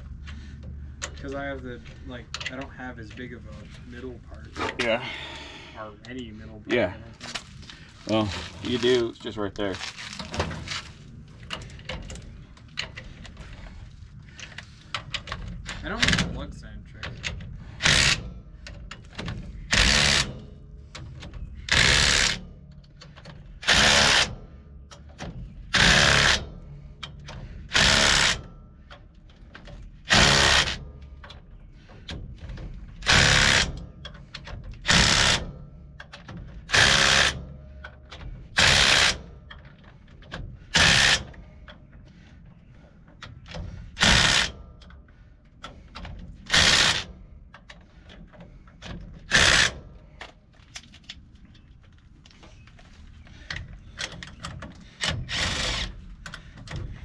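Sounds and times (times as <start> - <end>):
power drill bursts: 23.6 - 24.3, 25.7 - 26.4, 27.7 - 28.4, 30.1 - 30.8, 33.0 - 33.8, 34.9 - 35.5, 36.7 - 37.4, 38.6 - 39.2, 40.7 - 41.3, 44.0 - 44.6, 46.5 - 47.1, 55.3 - 55.9.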